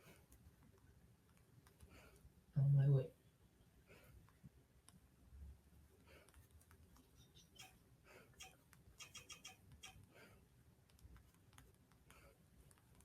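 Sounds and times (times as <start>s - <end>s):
faint high chirps: 7.0s - 7.8s, 8.4s - 10.0s.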